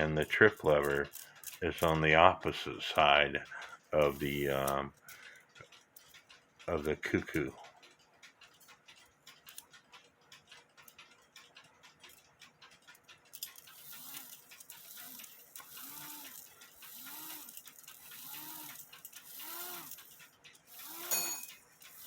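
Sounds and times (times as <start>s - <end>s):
clock ticking: 0.0s - 22.0s
clock mechanism hissing: 3.6s - 4.8s, 13.6s - 22.0s.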